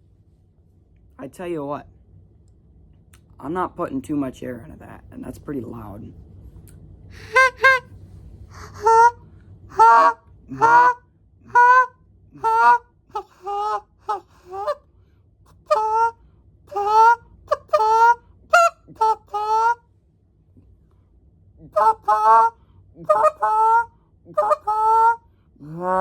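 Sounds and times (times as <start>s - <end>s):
goose call honks and clucks: 7.2s - 7.9s, 8.5s - 14.8s, 15.5s - 19.8s, 21.6s - 26.0s.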